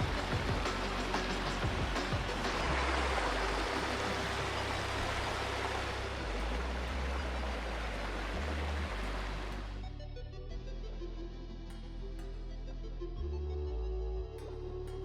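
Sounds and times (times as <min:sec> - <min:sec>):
creek water rushing: 0:00.0 - 0:09.8.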